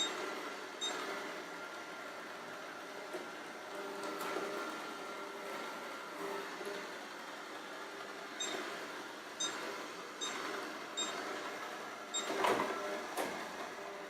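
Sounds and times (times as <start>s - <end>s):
short high beeps: 9.4s - 9.6s, 11.0s - 11.2s.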